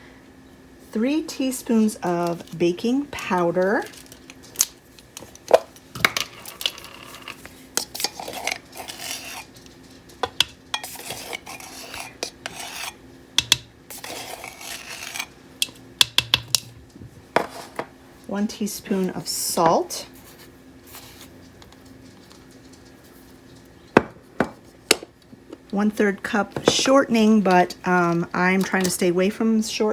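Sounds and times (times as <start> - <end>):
faint steady hum: 0.0 - 29.9
spoon clinking against containers: 10.2 - 11.4.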